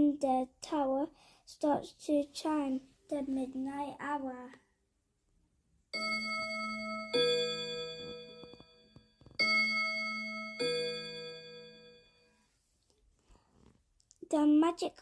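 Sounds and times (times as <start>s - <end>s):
tower clock bells chiming: 6.0s - 12.2s.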